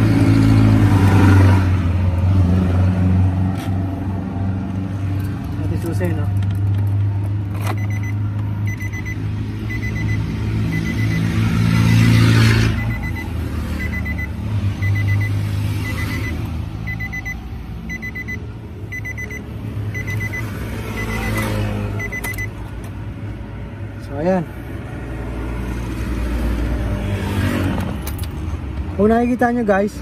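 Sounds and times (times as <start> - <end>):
passing traffic: 0.0 - 30.0
vehicle warning chime beeping: 7.6 - 11.5, 12.6 - 22.6.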